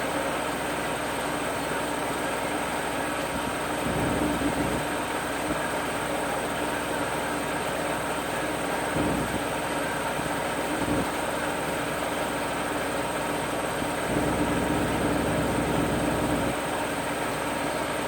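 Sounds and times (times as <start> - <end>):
washing machine running: 0.0 - 18.0.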